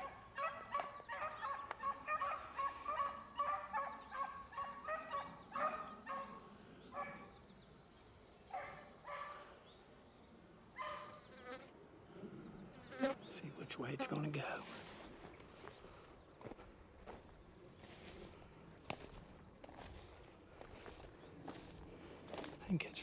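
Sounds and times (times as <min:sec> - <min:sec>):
dogs baying: 0:00.0 - 0:07.3
high insect drone: 0:00.0 - 0:23.0.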